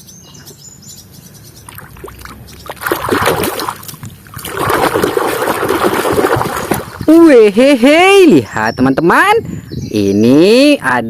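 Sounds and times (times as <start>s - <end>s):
water splashing and sloshing: 1.6s - 7.3s.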